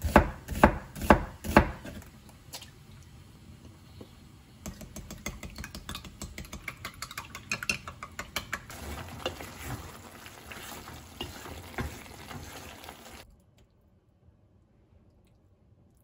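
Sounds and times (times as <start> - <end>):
utensil stirring food in cookware: 4.6 - 13.2.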